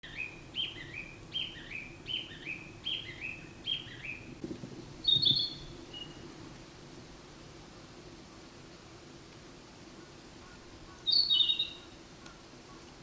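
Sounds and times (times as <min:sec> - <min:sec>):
flycatcher singing: 0:00.1 - 0:04.3, 0:05.0 - 0:06.3, 0:10.9 - 0:12.0.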